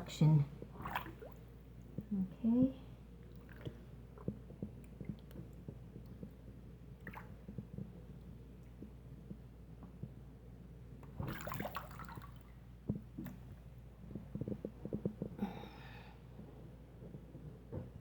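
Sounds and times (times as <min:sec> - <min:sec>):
water gurgling in sink drain: 0:00.0 - 0:02.4, 0:11.0 - 0:12.4
water splash: 0:00.8 - 0:01.4, 0:11.2 - 0:12.4.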